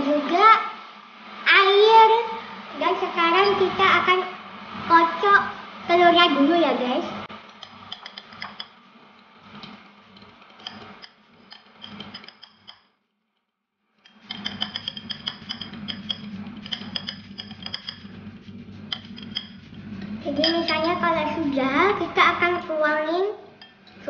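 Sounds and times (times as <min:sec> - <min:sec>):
utensil clicking against bowl: 0:07.5 - 0:08.8, 0:09.6 - 0:12.8, 0:14.0 - 0:18.1.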